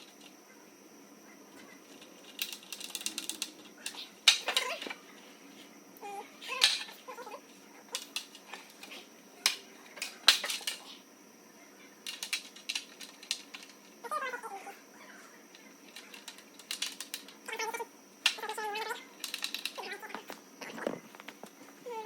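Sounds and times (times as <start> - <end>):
plastic pieces and screws clicking: 1.6 - 5.0, 6.5 - 6.9, 7.9 - 10.9, 12.0 - 13.9, 15.5 - 17.4, 19.2 - 19.9.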